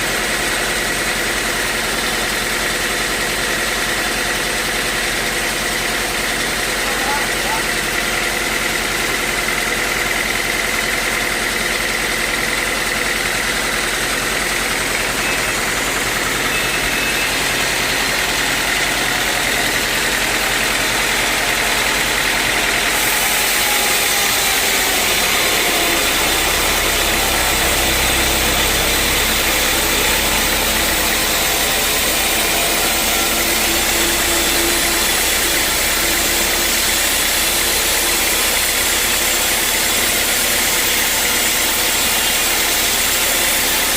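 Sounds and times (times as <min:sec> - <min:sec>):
sawmill engine running: 0:00.0 - 0:43.9
low hum: 0:24.3 - 0:40.3.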